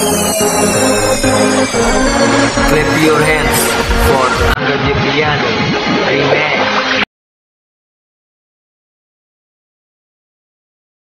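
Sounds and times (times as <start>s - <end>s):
electronic beat music: 0.0s - 7.0s.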